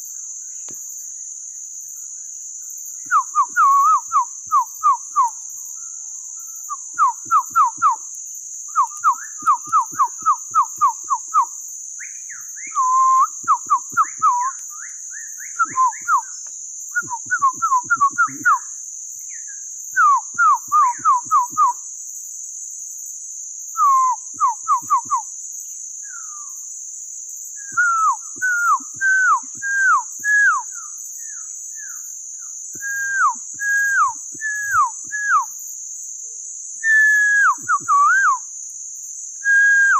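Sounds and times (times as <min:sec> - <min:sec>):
high insect drone: 0:00.0 - 0:39.9
man whistling bird calls: 0:03.0 - 0:05.4, 0:06.6 - 0:08.0, 0:08.7 - 0:18.7, 0:19.3 - 0:21.8, 0:23.7 - 0:25.3, 0:26.0 - 0:26.6, 0:27.6 - 0:32.0, 0:32.7 - 0:35.5, 0:36.8 - 0:38.5, 0:39.4 - 0:39.9.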